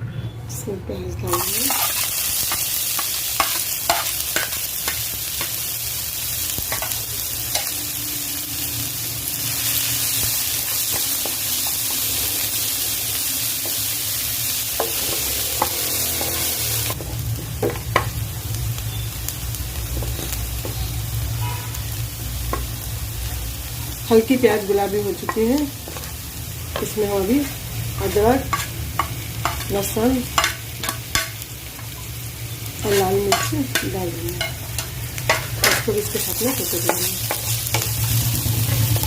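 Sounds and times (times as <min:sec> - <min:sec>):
onions sizzling in oil: 0:01.0 - 0:39.0
spatula scraping a pan: 0:14.8 - 0:16.9.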